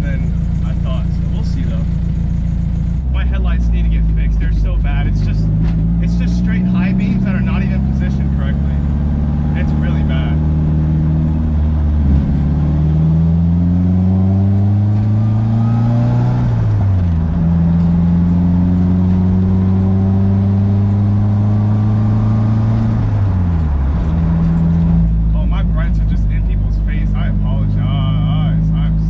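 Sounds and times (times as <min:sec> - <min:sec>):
car engine accelerating: 0:00.0 - 0:29.0.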